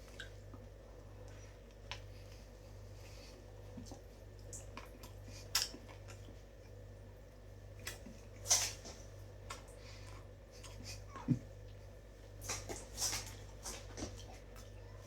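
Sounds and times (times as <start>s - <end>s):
person chewing food: 0.0s - 6.8s, 7.8s - 14.8s.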